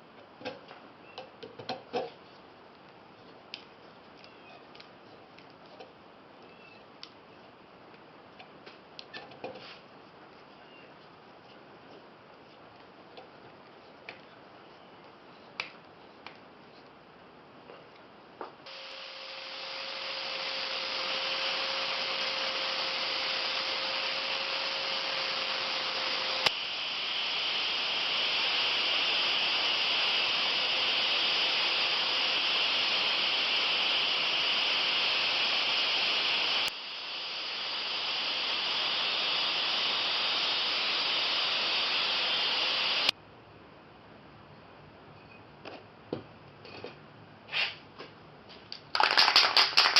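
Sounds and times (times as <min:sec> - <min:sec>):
sanding hiss: 0:18.7 - 0:43.1.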